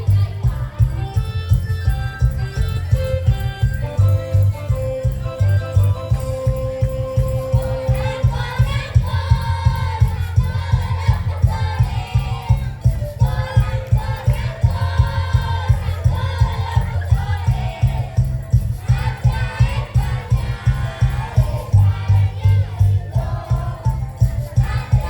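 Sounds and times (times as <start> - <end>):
pulsing bass beat: 0.0 - 25.0
group singing a carol: 5.8 - 25.0.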